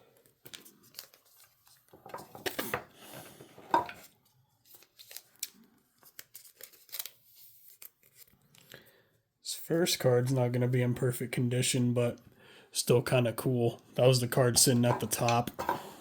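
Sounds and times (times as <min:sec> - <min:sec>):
packaging rustling and tearing: 0:00.3 - 0:02.8, 0:04.0 - 0:08.6.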